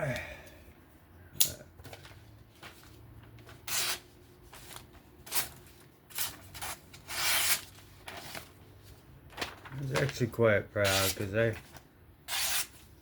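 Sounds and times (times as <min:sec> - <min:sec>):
knife blade rasping across material: 0:12.3 - 0:12.8.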